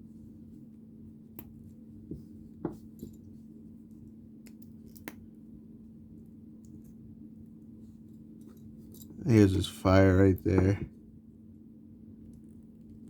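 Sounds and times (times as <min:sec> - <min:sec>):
steady low hum: 0:05.3 - 0:13.0.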